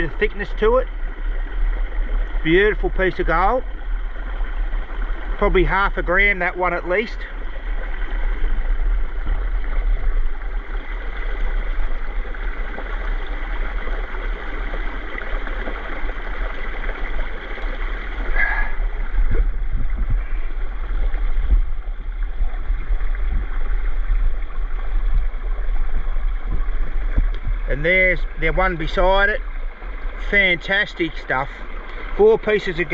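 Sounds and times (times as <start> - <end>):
creek water rushing: 0.0 - 32.9
heavy low rumble: 16.8 - 32.9.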